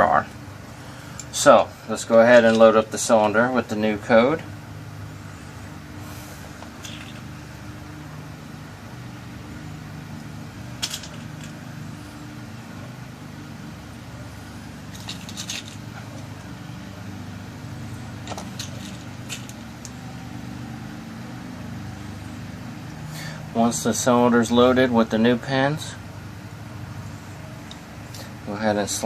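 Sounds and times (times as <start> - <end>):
steady low hum: 0.0 - 29.0
small metal pins clicking: 14.9 - 15.8.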